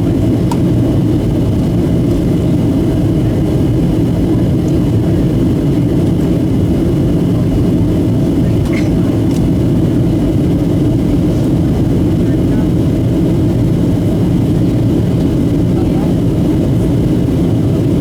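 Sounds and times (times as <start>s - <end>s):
airplane cabin drone: 0.0s - 18.0s.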